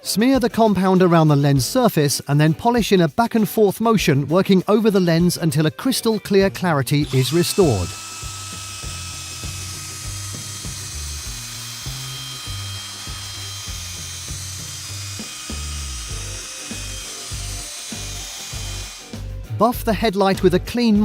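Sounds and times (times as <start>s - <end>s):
drill whining with polishing pad: 7.0s - 19.5s
music with beat and bass: 19.1s - 21.0s.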